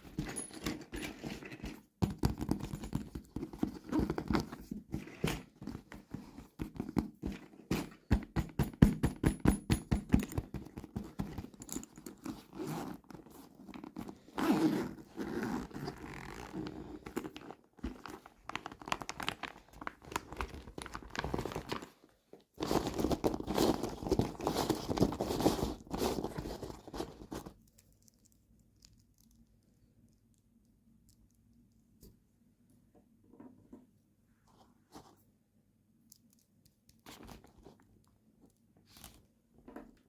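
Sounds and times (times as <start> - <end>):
plastic packaging crinkling and tearing: 17.9 - 22.0.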